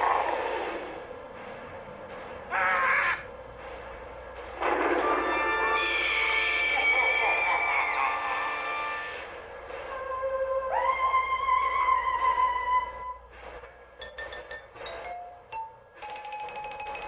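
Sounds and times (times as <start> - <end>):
toy train electronic music: 5.0 - 9.5, 14.0 - 17.0.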